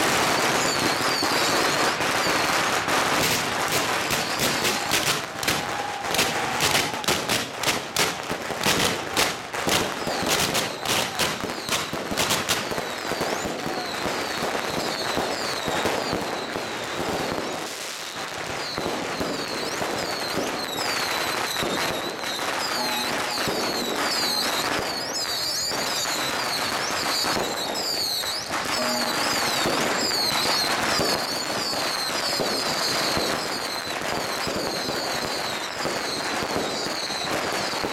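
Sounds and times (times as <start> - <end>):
firecrackers banging and crackling: 0.0 - 37.9.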